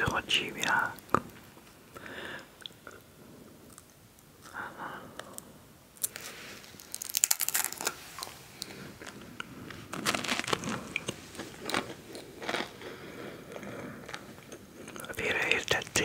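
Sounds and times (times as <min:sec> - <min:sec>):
crunching snack bites: 0:06.0 - 0:09.2, 0:09.9 - 0:15.1
chewing: 0:10.2 - 0:15.2.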